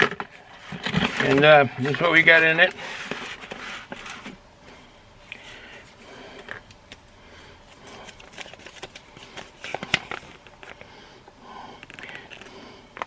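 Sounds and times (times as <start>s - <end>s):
package rustling: 0.0s - 4.4s, 7.7s - 10.8s.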